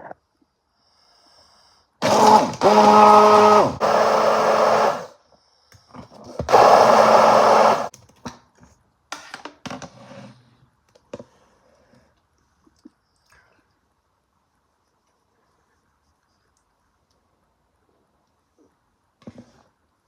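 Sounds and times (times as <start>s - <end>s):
hand blender running: 2.0s - 5.1s, 6.4s - 7.9s.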